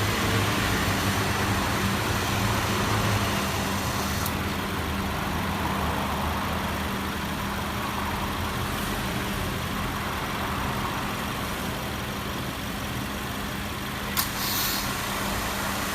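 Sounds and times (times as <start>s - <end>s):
air-conditioning compressor running: 0.0s - 5.6s
car engine idling: 0.0s - 15.9s
sharp click: 14.1s - 14.8s.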